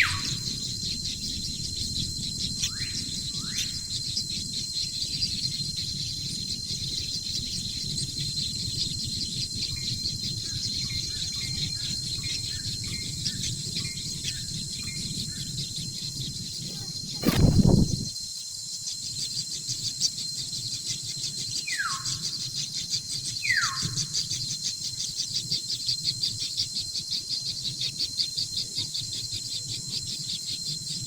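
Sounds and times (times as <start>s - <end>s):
insect chorus drone and ticking: 0.0s - 31.0s
loud thud: 17.2s - 18.1s.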